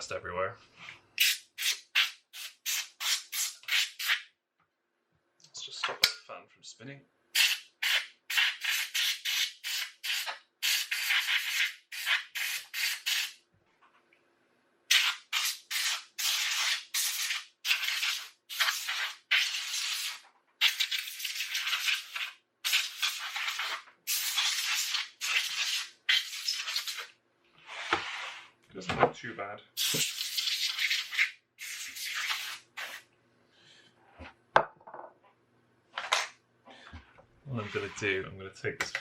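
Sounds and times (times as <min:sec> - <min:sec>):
compressed air blasts: 0:01.2 - 0:04.2, 0:14.9 - 0:27.0.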